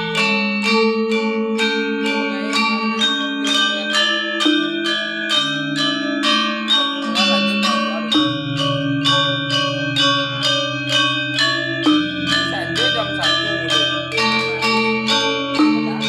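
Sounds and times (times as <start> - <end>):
gamelan ensemble playing: 0.0 - 16.0.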